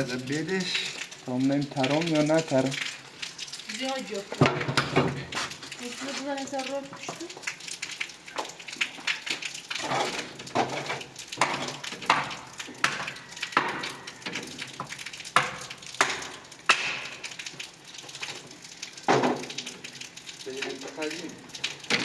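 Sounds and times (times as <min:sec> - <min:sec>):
wood knocking and cracking: 0:04.3 - 0:05.6, 0:09.2 - 0:19.8.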